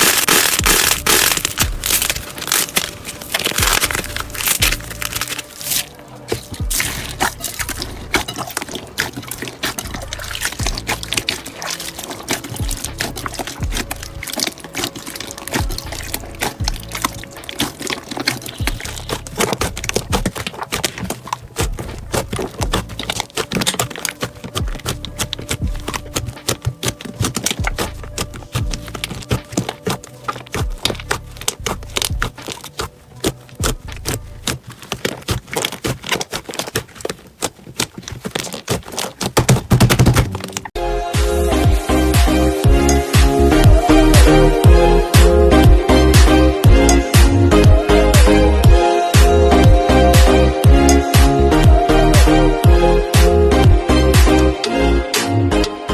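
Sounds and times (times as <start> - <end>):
music: 0.0 - 37.1, 40.7 - 55.9
slime squishing wet pops: 0.0 - 40.8.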